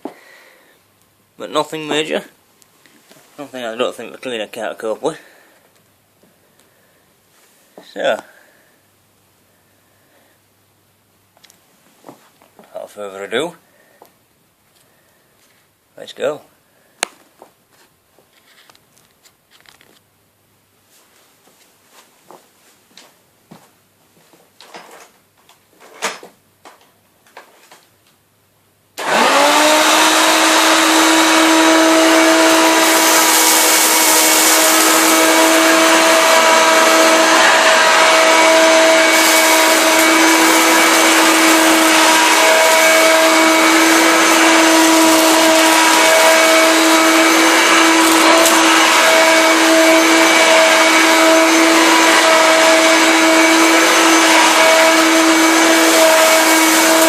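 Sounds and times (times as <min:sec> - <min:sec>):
vacuum cleaner whining: 0:29.0 - 0:57.0.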